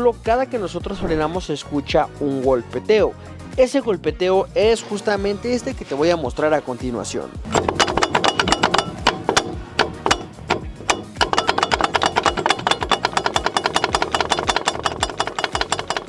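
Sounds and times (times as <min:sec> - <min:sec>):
brake disc knocking: 0:07.4 - 0:16.0.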